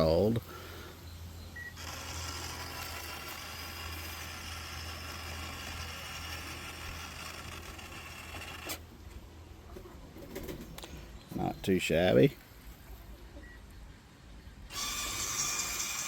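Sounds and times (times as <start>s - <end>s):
small electric motor whirring: 1.7s - 8.9s, 14.7s - 16.0s.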